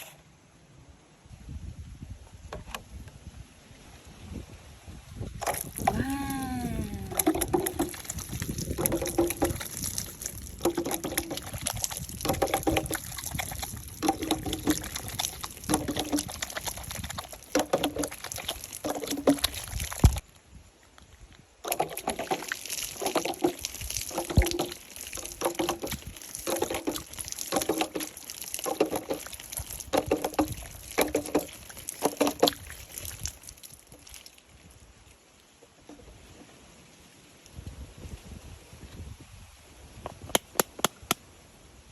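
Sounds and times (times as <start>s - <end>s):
water sloshing splashes: 5.4s - 20.2s, 21.6s - 34.7s.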